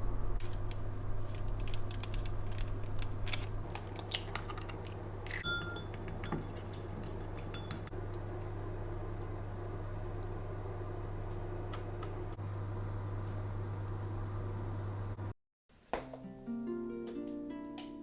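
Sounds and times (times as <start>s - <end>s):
low hum: 0.0s - 6.0s
ringing clink: 5.4s - 6.3s.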